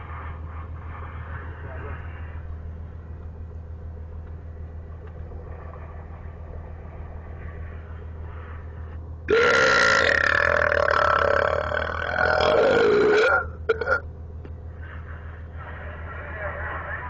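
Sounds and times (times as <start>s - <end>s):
low steady hum: 0.0s - 17.0s
loud belch over radio: 9.3s - 14.0s.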